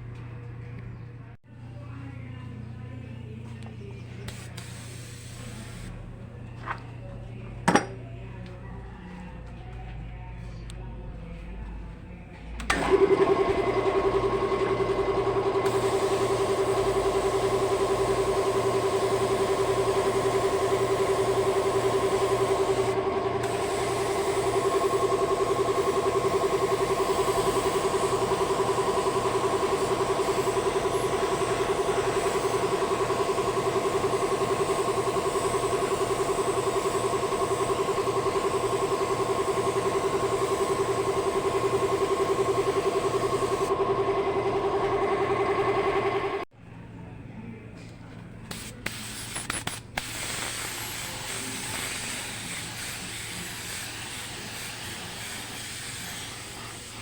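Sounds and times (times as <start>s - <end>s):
electric tool motor whine: 12.7s - 46.5s, 50.5s - 57.0s.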